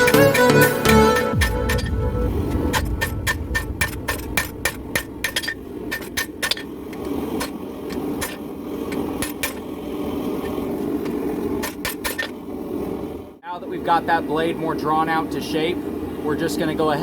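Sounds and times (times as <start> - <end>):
hammer blows on hot steel: 0.0 - 12.9.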